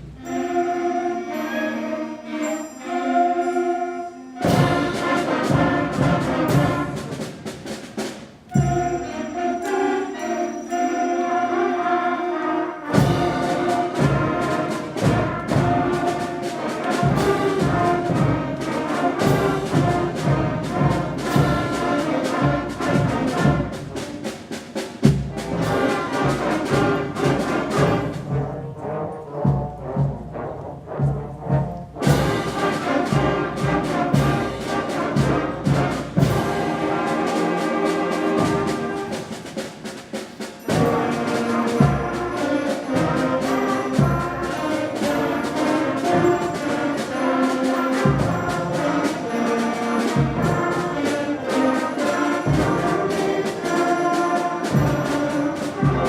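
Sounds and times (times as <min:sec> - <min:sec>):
concert band playing: 0:00.0 - 0:56.0
timpani: 0:00.0 - 0:56.0.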